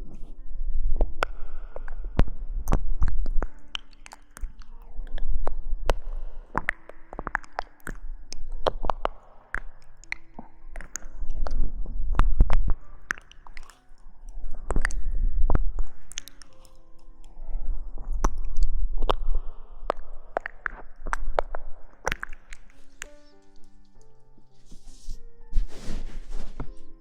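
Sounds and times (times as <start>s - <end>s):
close rustling and crackling: 21.5s - 27.0s.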